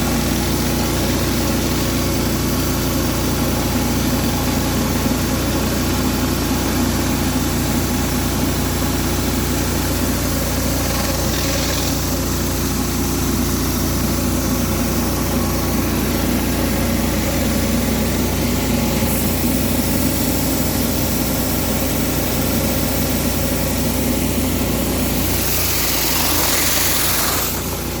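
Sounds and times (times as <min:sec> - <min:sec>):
pressure washer engine running: 0:00.0 - 0:28.0
water spray hissing: 0:25.3 - 0:27.7.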